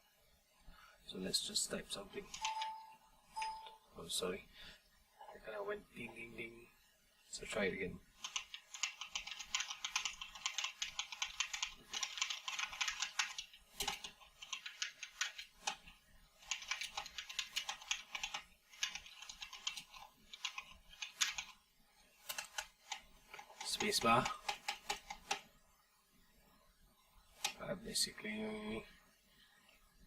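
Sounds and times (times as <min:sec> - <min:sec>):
fast typing on clicky keyboard: 0:02.3 - 0:02.8, 0:08.2 - 0:21.6, 0:22.3 - 0:25.4.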